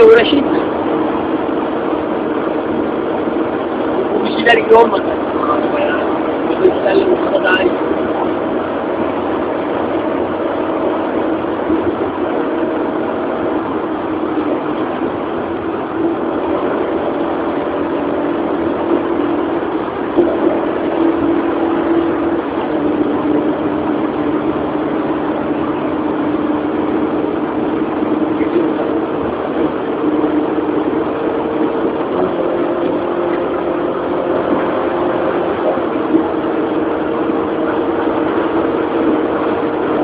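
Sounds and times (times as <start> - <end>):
car engine running: 0.0 - 40.0
road and cabin noise: 0.0 - 40.0.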